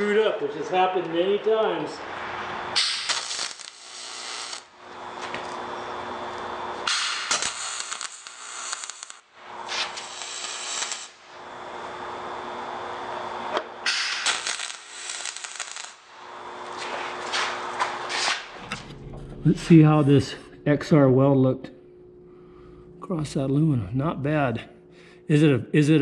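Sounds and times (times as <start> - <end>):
welding arc crackling hiss: 2.7 - 18.5
faint steady hum: 18.6 - 26.0.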